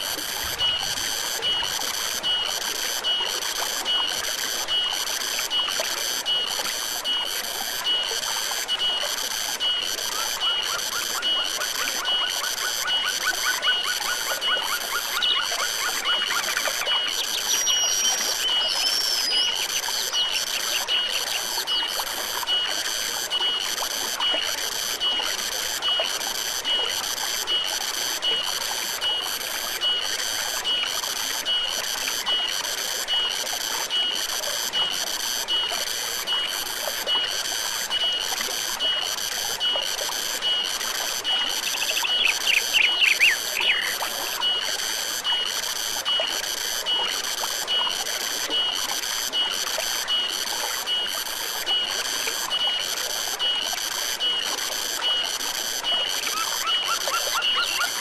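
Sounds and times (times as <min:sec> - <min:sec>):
stream running: 0:00.0 - 0:58.0
high-pitched animal chirp: 0:13.4 - 0:20.7, 0:41.6 - 0:44.0, 0:56.3 - 0:58.0.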